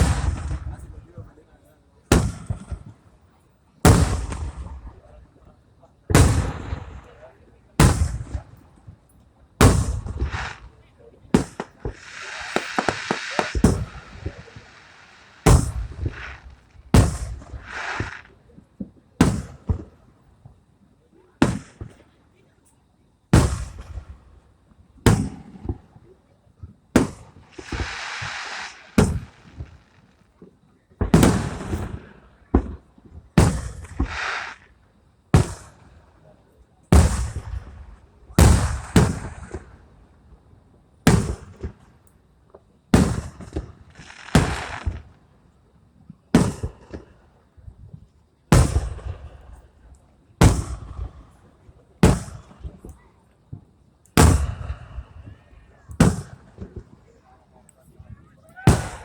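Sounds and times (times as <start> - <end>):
firework hiss: 0.0 - 1.2, 3.9 - 5.2, 6.1 - 7.2, 9.6 - 18.6, 19.2 - 20.1, 21.4 - 22.0, 23.3 - 24.4, 27.0 - 30.4, 31.0 - 36.1, 36.9 - 40.1, 41.1 - 41.9, 42.9 - 45.6, 48.5 - 53.0, 54.1 - 57.2, 58.7 - 59.0
firework shells bursting: 0.0 - 1.2, 3.9 - 5.2, 6.1 - 8.9, 9.6 - 20.1, 21.4 - 22.0, 23.3 - 24.4, 27.0 - 36.1, 36.9 - 39.9, 41.1 - 41.9, 42.9 - 45.3, 48.5 - 52.9, 53.6 - 57.2, 58.6 - 59.0.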